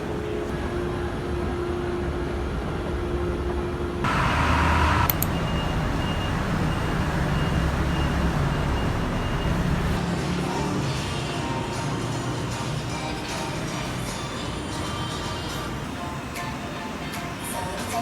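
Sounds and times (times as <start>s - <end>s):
vehicle rumble from inside: 4.0s - 10.9s
faint high beep: 5.3s - 9.8s.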